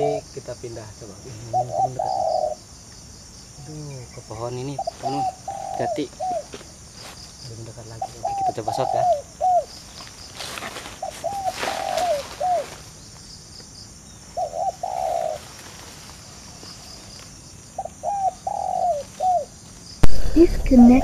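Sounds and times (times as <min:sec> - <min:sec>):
dove cooing: 0:01.2 - 0:02.6, 0:04.6 - 0:06.6, 0:08.0 - 0:09.8, 0:11.0 - 0:12.8, 0:14.3 - 0:19.6.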